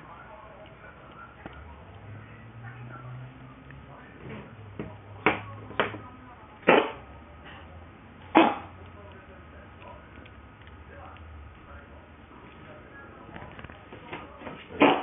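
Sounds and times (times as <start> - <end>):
cat coughing: 8.3 - 8.7.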